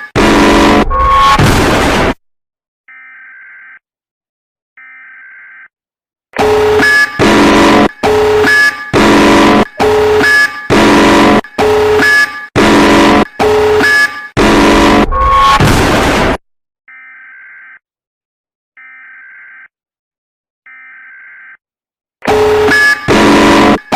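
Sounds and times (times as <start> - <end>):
data-burst tones: 0.0 - 2.2, 6.4 - 16.4, 22.3 - 23.9
loud pulsing alarm: 0.0 - 2.2, 2.9 - 3.8, 4.8 - 5.7, 6.4 - 17.8, 18.8 - 19.7, 22.2 - 23.9.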